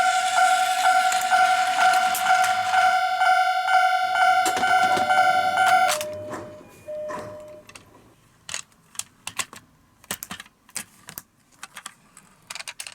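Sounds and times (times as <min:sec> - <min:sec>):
brief steady tone: 0:00.0 - 0:07.8.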